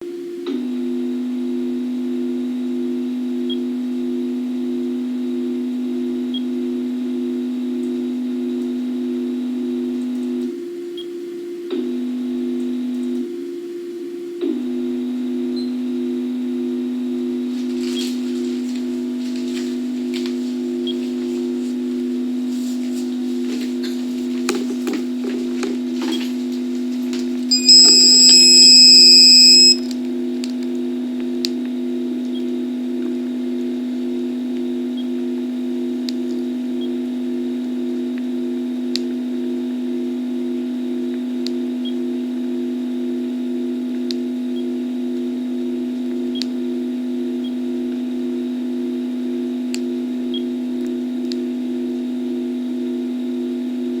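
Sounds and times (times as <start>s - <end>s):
low electrical hum: 25.9s - 42.6s
high electronic alarm beep: 27.5s - 29.8s
sharp clicks: 27.5s - 29.8s.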